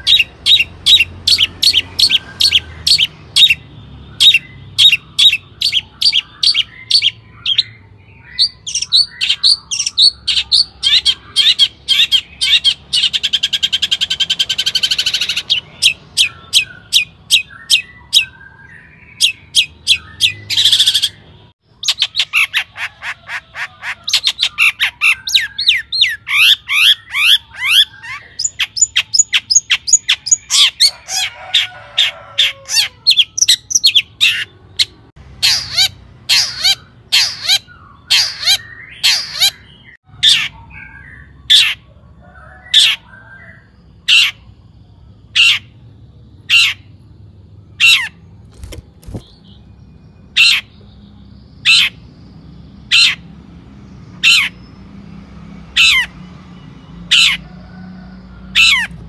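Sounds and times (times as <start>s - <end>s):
bird singing sharp chattering notes: 23.9s - 30.9s.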